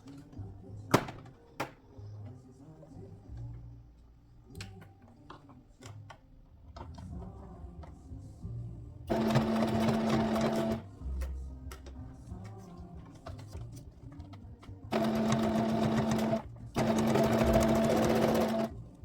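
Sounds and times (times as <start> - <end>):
sewing machine clicks and hum: 9.1 - 10.8, 14.9 - 18.7
sewing machine stitching: 9.1 - 10.8, 14.9 - 18.8.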